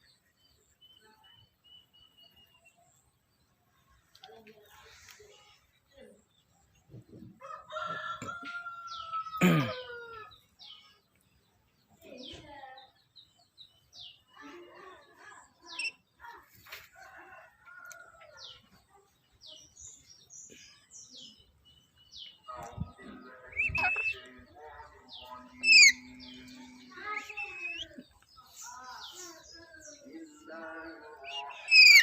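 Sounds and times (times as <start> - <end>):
harsh parrot squawks: 23.6 - 24.2, 25.6 - 26.0, 31.5 - 32.0
parrot high chirps: 23.6 - 24.2, 25.5 - 26.2, 31.4 - 32.0.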